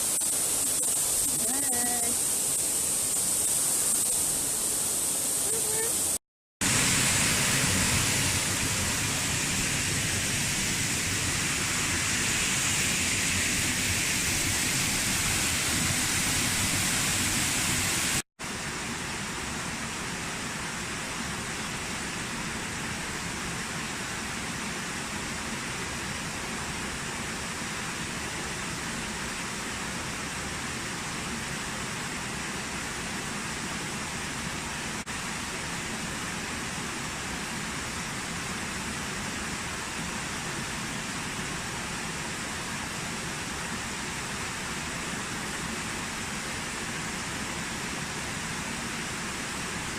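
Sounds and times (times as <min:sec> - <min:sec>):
waterfall rushing: 0:00.0 - 0:18.2.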